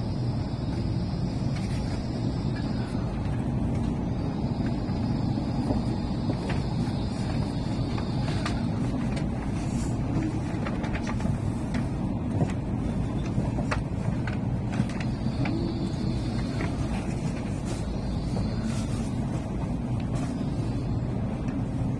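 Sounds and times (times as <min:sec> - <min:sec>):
faint high whine: 0:00.0 - 0:11.7, 0:12.4 - 0:21.9
train interior low rumble: 0:00.0 - 0:21.9.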